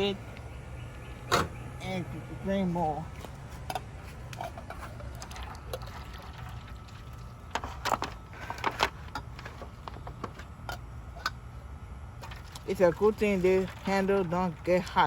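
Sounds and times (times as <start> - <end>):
water being poured off: 5.1 - 7.3.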